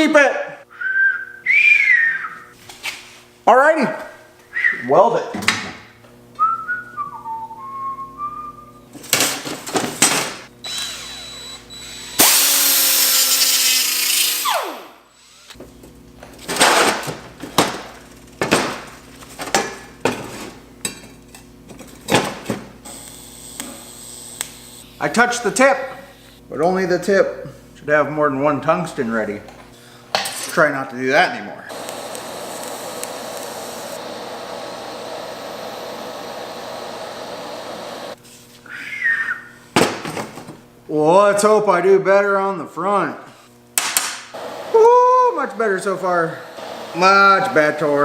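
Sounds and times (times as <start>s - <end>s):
electrical hum: 0.0s - 48.0s
welding arc hissing: 12.2s - 15.5s, 22.9s - 26.4s, 31.7s - 38.2s, 44.3s - 48.0s.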